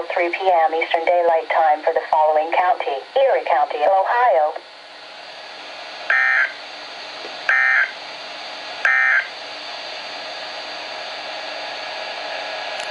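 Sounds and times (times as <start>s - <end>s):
radio hiss: 0.0s - 4.6s
screechy digital data bursts: 6.1s - 6.6s, 7.5s - 8.0s.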